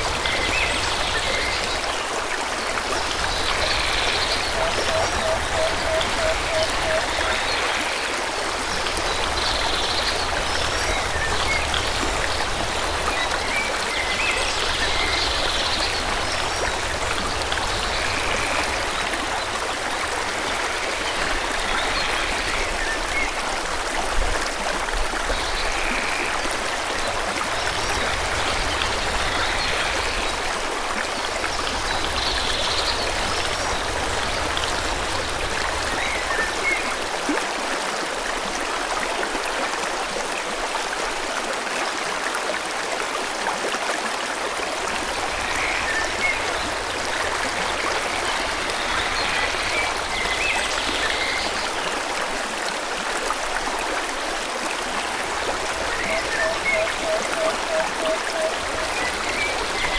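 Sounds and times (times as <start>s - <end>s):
stream water rushing: 0.0s - 59.9s.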